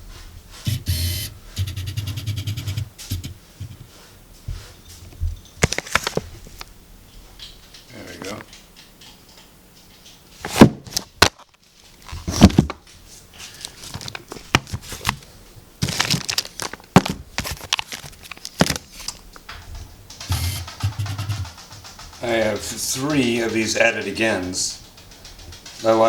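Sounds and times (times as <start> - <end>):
plastic wrapping crinkling: 5.1 - 6.7, 10.0 - 26.0
sharp knocks on boxes: 10.4 - 11.4.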